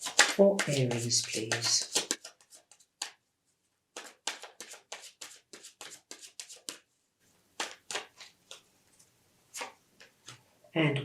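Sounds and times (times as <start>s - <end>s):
cards shuffled by hand: 0.0s - 3.2s, 3.9s - 6.8s, 7.6s - 8.6s.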